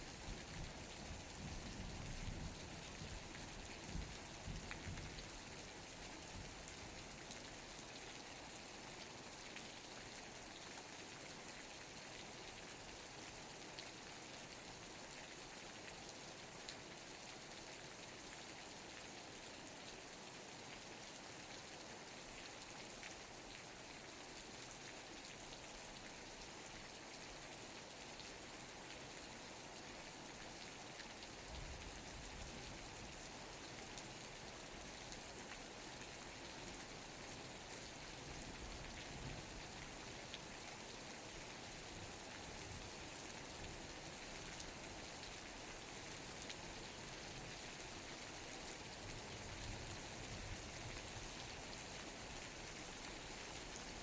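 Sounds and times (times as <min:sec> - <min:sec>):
steady rainfall: 0:00.0 - 0:54.0.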